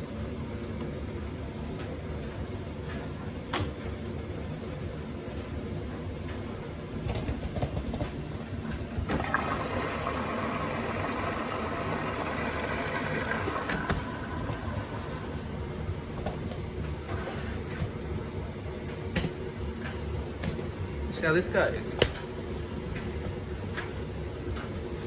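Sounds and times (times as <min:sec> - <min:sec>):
washing machine water rushing: 0:08.0 - 0:25.0.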